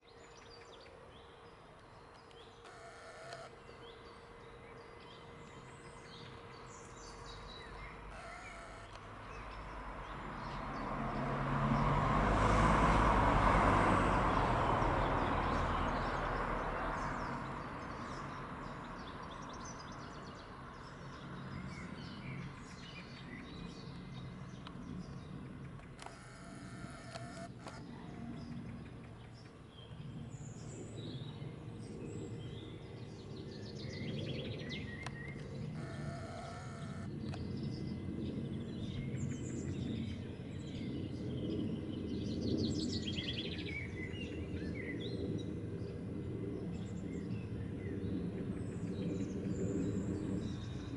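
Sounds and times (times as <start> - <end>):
birds chirping: 0.0 - 11.9, 14.3 - 45.5
passing vehicle rushing: 8.5 - 18.6.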